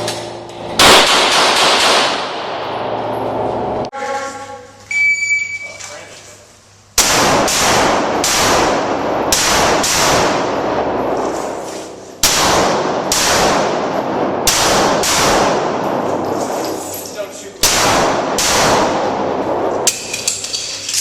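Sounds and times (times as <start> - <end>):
handgun shots with echo: 0.8 - 2.6, 12.2 - 16.3, 17.6 - 19.3.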